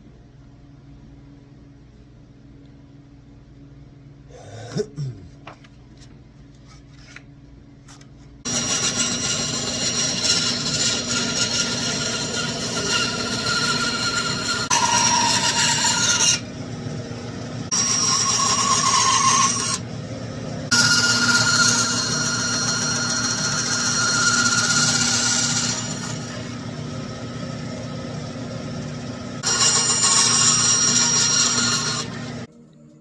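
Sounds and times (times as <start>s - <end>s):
small power tool sanding: 8.5s - 16.4s, 29.4s - 32.5s.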